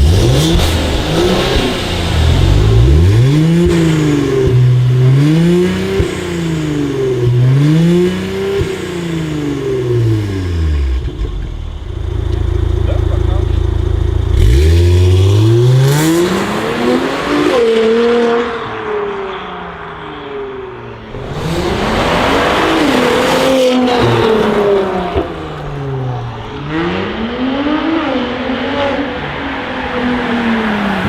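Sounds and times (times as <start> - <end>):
car engine accelerating hard: 0.0 - 31.0.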